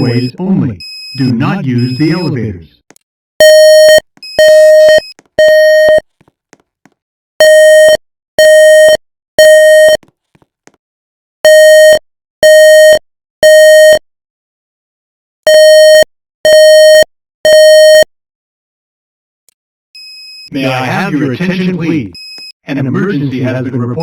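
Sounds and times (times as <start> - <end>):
fire alarm beeps: 0.0 - 2.3, 3.4 - 6.0.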